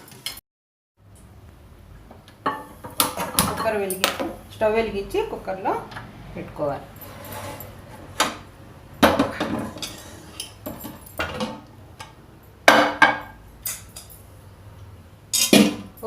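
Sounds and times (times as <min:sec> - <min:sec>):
metal kitchen vessels clanking: 0:02.4 - 0:04.4, 0:07.0 - 0:14.2, 0:15.3 - 0:16.0.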